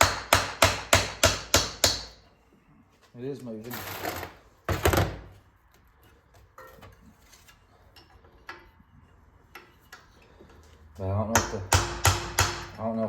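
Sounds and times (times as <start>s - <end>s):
wrench knock on metal: 11.3s - 12.8s.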